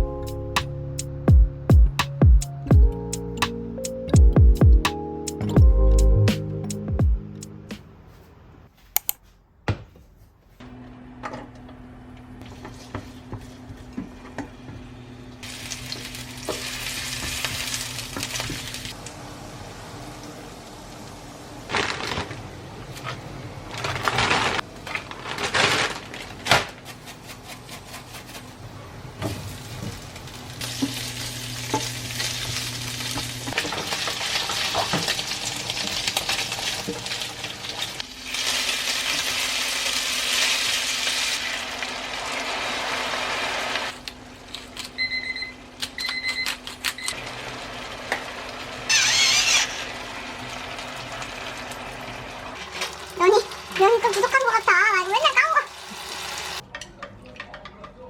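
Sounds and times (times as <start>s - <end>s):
food sizzling in a frying pan: 15.4s - 21.8s, 29.4s - 44.0s, 47.2s - 56.6s.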